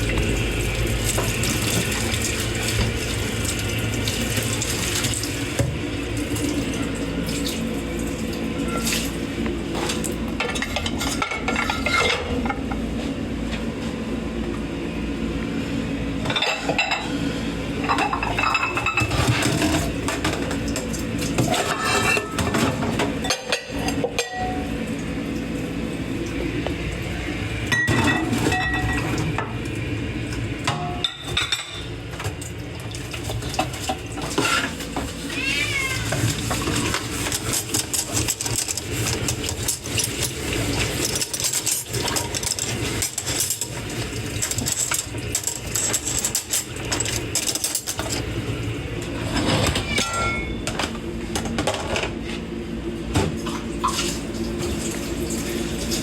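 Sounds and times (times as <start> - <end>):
dishes and cutlery clinking: 9.8 - 12.8, 21.4 - 24.6, 27.7 - 29.2, 49.4 - 50.9
cat meowing faintly: 35.3 - 36.9.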